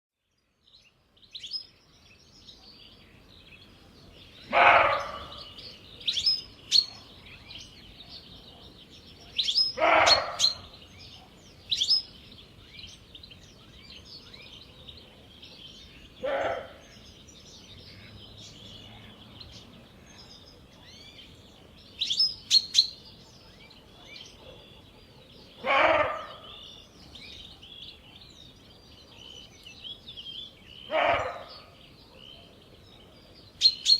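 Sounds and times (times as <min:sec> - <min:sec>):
small birds chirping: 0:00.2 - 0:33.9
deer barking: 0:04.5 - 0:05.4, 0:09.8 - 0:10.7, 0:16.2 - 0:16.8, 0:25.6 - 0:26.5, 0:30.9 - 0:31.6.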